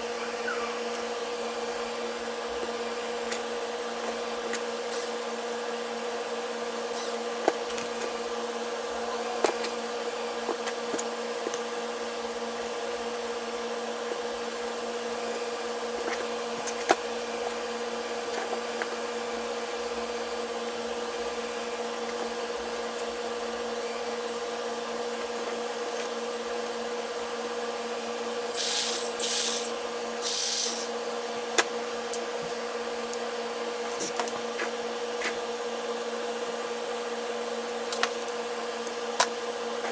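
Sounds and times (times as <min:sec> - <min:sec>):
short loud hissing bursts: 0:28.5 - 0:30.9
small electric motor humming: 0:28.5 - 0:31.0.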